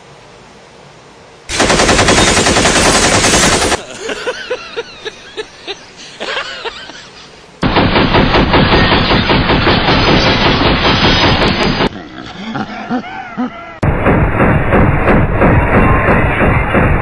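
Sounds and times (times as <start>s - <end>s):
machine-gun bursts: 1.5s - 3.9s, 7.6s - 11.9s.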